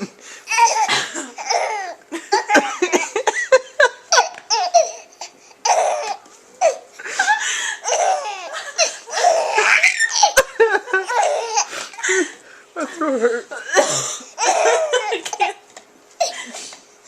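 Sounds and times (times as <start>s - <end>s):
baby laughing: 0.5s - 3.4s, 4.0s - 12.4s, 14.4s - 16.5s.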